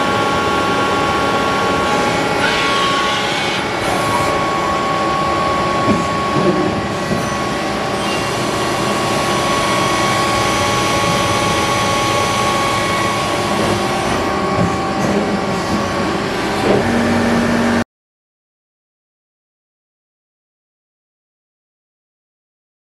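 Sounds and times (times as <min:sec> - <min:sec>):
high machine whines: 0:00.0 - 0:17.8
lathe machine hum: 0:00.0 - 0:17.8.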